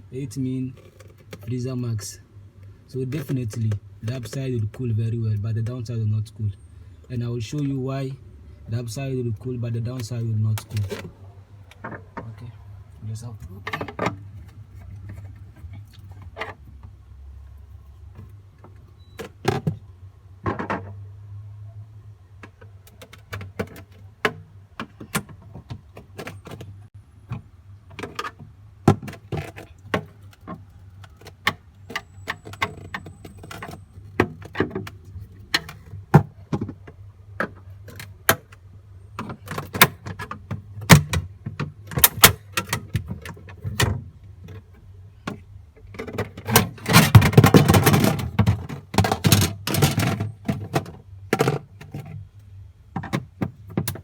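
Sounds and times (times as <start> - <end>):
rattling clatter: 46.0 - 52.1.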